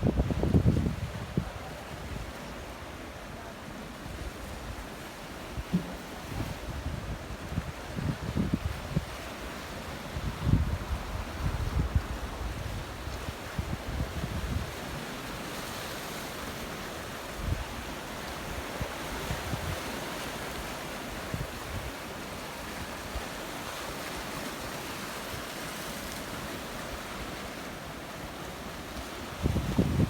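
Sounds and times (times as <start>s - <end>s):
wind buffeting microphone: 0.0s - 2.3s, 5.6s - 9.2s, 10.1s - 14.8s, 29.4s - 30.0s
sea surf washing on shore: 0.0s - 30.0s.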